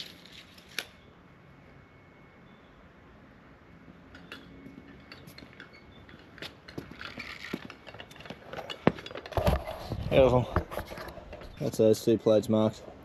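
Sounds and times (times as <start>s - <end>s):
hand tools clicking and clinking: 4.1s - 9.8s.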